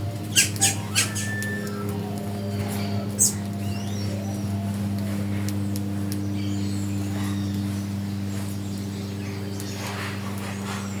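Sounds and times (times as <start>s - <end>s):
bird chirping squawks: 0.3s - 2.0s, 2.6s - 4.4s.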